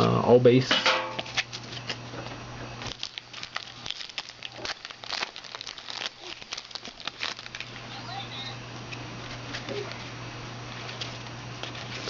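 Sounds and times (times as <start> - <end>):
foil wrapper crinkling: 2.8 - 8.6, 10.7 - 12.0.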